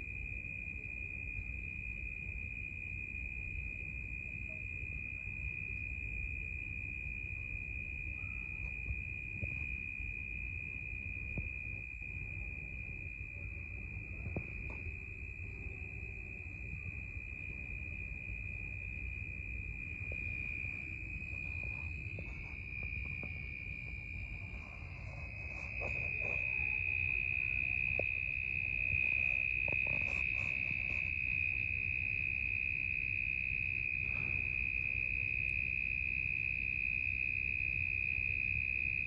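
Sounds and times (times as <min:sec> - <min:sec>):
crickets trilling: 0:00.0 - 0:39.0
low background rumble: 0:08.9 - 0:32.4.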